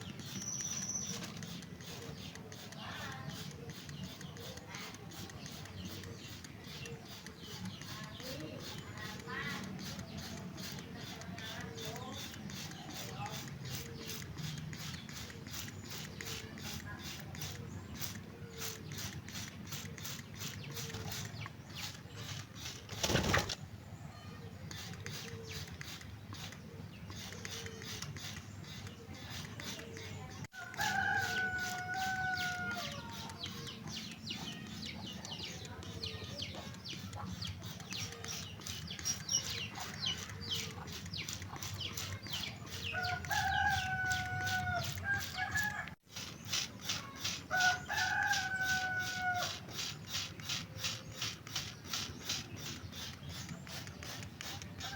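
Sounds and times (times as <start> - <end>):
fast even ticking: 0.0 - 22.9
rooster crowing: 30.6 - 33.0, 43.0 - 46.0, 47.5 - 49.6.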